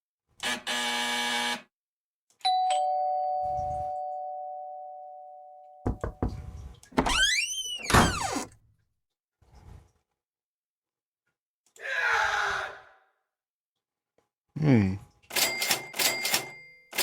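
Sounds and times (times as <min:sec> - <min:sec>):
two-note doorbell chime: 0:02.5 - 0:05.8
knocks: 0:05.9 - 0:07.2
loud pitch-sliding squeak: 0:07.0 - 0:08.5.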